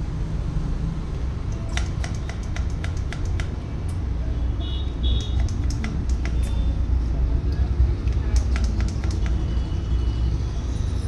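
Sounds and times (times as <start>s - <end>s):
sharp clicks: 1.5s - 4.0s, 5.2s - 6.6s, 8.0s - 9.4s.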